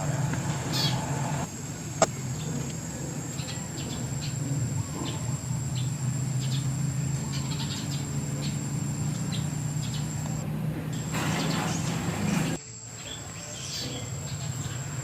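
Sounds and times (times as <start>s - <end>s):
low steady hum: 0.0s - 12.6s
steady high whine: 0.0s - 12.6s
small animals chirping: 2.0s - 10.4s.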